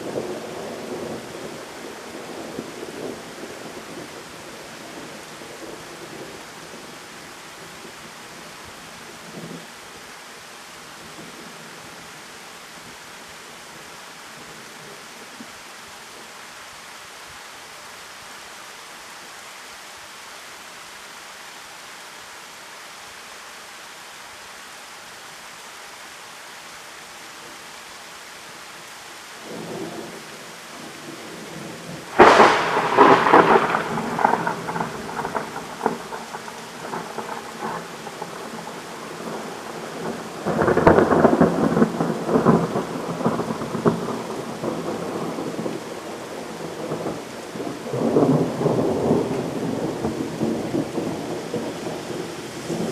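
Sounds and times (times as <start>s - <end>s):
steady pouring rain: 0.0s - 52.9s
thunder rumbling: 29.4s - 52.9s
loud thunderclap: 31.5s - 52.9s.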